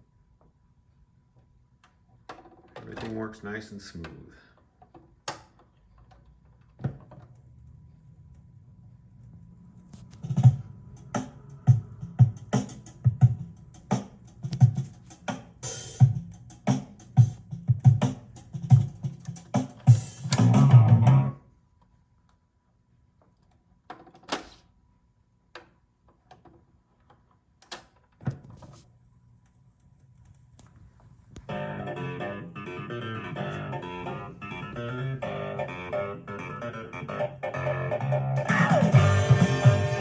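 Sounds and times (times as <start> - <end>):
music from vinyl record: 9.4 - 21.4, 31.3 - 40.0.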